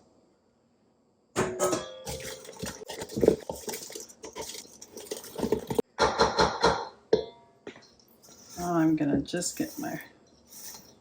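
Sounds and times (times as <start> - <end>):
utensil scraping mixing bowl: 2.1 - 5.8, 8.0 - 11.0.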